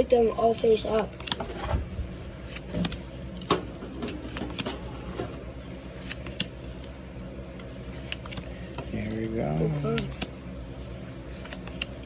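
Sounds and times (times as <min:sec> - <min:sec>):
low background hum: 0:00.0 - 0:12.0
cards and wrappers rustling: 0:00.1 - 0:12.0.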